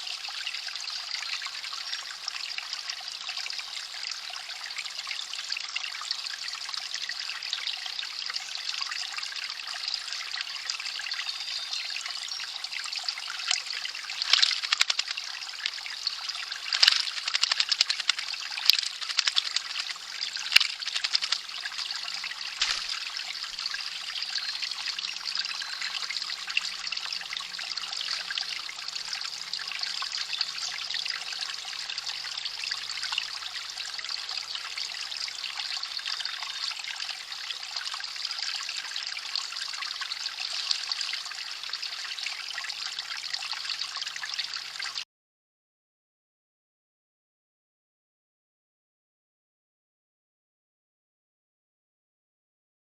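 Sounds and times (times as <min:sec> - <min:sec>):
water trickling: 0:00.0 - 0:45.0
bird splashing in water: 0:13.4 - 0:23.8.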